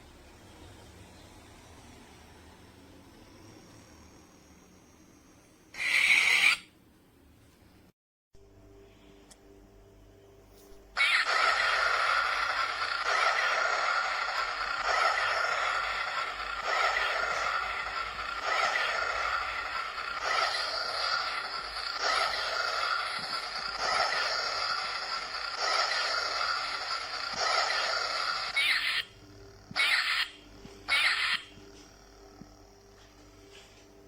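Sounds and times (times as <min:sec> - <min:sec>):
toy lightsaber buzzing hum: 0:03.5 - 0:06.7, 0:10.6 - 0:33.8.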